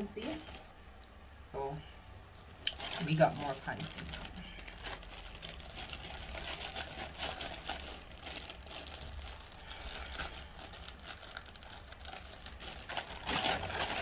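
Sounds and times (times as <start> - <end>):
plastic packaging crinkling: 0.1 - 0.7, 2.6 - 14.0.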